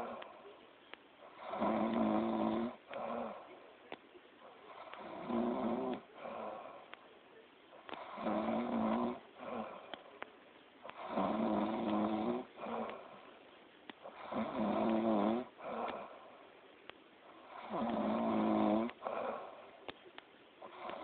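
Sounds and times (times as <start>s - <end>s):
person snoring loudly: 1.4s - 3.3s, 4.9s - 6.4s, 10.9s - 12.9s, 14.1s - 15.9s, 17.5s - 19.0s.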